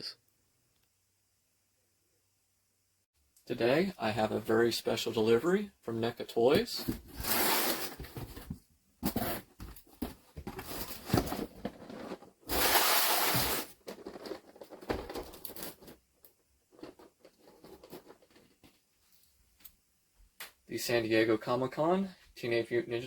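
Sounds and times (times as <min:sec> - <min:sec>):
packaging rustling and knocking: 0:06.8 - 0:16.0, 0:16.7 - 0:18.8.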